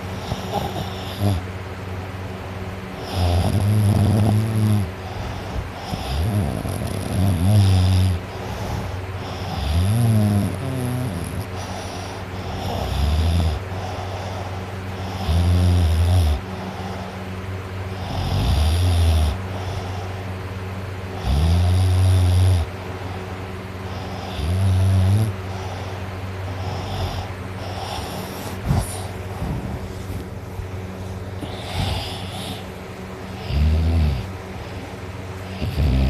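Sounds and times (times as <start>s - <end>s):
boy snoring: 0.2s - 1.4s, 3.0s - 17.2s, 18.0s - 20.1s, 21.2s - 22.7s, 23.9s - 26.0s, 26.6s - 29.9s, 31.4s - 32.7s, 33.4s - 34.3s, 35.5s - 36.0s.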